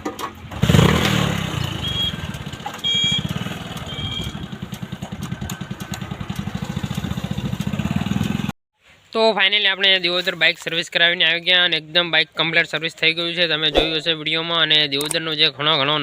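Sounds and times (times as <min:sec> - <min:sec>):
motorcycle engine revving: 0:00.4 - 0:08.5.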